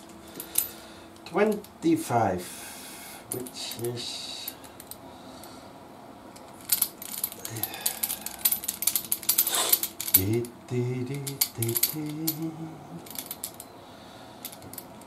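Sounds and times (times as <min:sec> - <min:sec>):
man humming: 0:07.4 - 0:08.5, 0:09.5 - 0:13.3.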